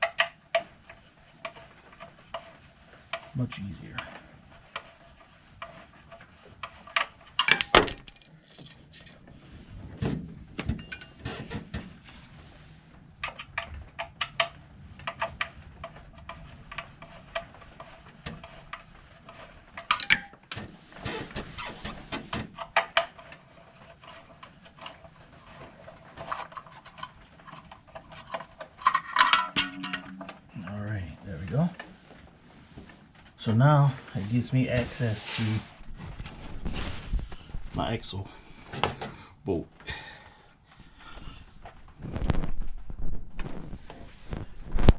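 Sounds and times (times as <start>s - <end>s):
metal tools clinking: 7.4s - 9.2s, 10.8s - 11.3s, 19.9s - 20.4s, 28.8s - 30.3s.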